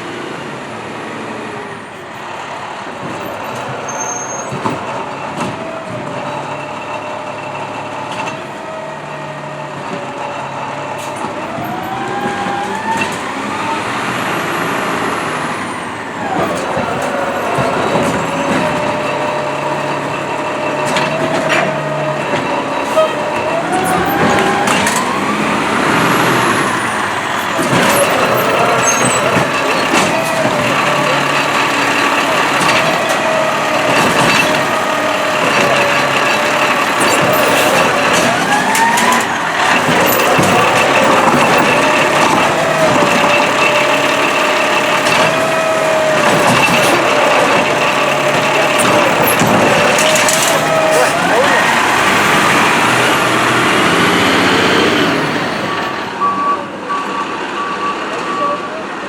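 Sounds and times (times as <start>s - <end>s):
truck engine and hydraulics whining: 0.0s - 59.0s
mechanical knocks: 35.4s - 51.1s.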